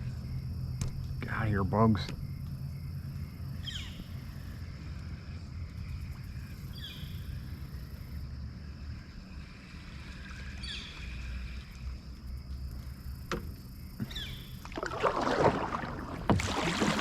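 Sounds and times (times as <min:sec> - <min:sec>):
water against kayak hull: 0:09.5 - 0:17.0.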